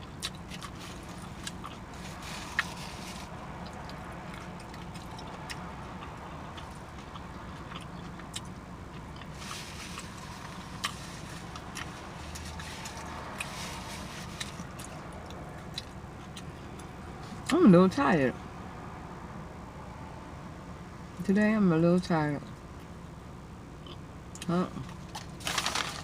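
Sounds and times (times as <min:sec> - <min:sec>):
close-up chewing with mouth clicks: 0:00.0 - 0:17.4.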